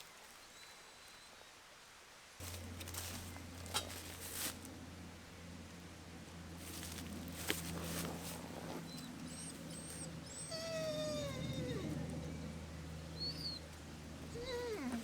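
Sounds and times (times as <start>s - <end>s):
dog whining: 8.1s - 15.0s.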